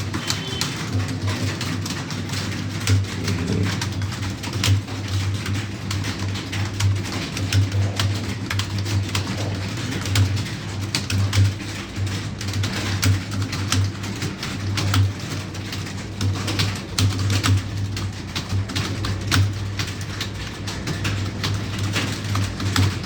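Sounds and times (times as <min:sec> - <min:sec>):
keyboard typing clicks: 0:00.0 - 0:02.3.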